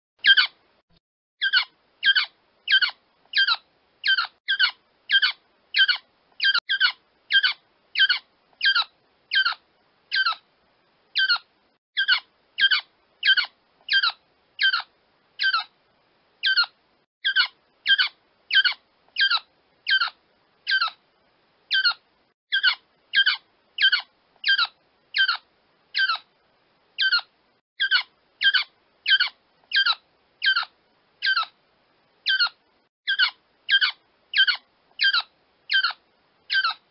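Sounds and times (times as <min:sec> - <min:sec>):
quail calling: 0:00.2 - 0:00.5.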